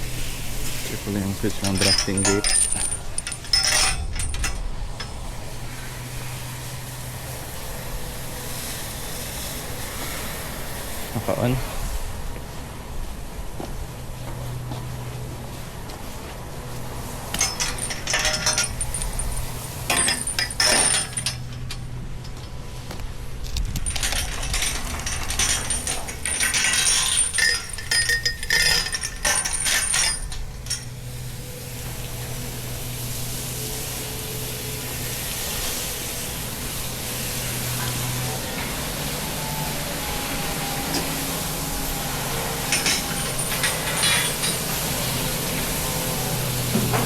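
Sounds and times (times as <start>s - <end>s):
steady hiss: 0.0s - 13.3s, 23.3s - 46.9s
low machine hum: 0.0s - 47.0s
metal clinking and rattling: 0.9s - 5.4s, 17.3s - 22.7s, 23.4s - 31.2s, 42.4s - 45.8s.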